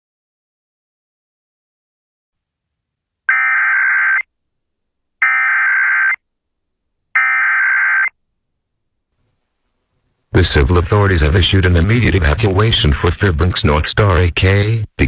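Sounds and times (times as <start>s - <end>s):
buzzing digital data tones: 3.3s - 4.2s, 5.2s - 6.2s, 7.2s - 8.1s.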